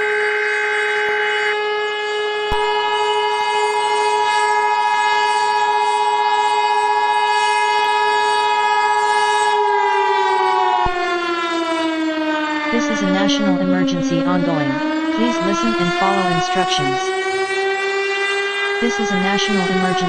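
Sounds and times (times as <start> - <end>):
civil defense siren wailing: 0.0 - 20.0
steady alert tone: 12.8 - 17.2, 18.8 - 20.0.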